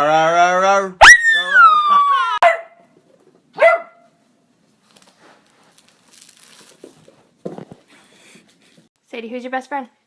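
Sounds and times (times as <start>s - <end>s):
dog howling: 1.0s - 2.6s.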